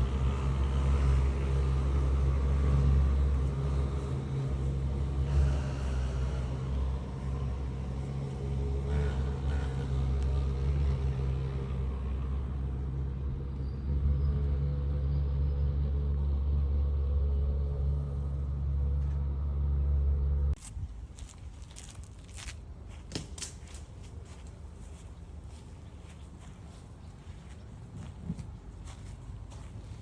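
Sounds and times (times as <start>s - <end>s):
steady low rumble: 3.0s - 14.0s, 19.9s - 30.0s
rustling: 20.6s - 30.0s.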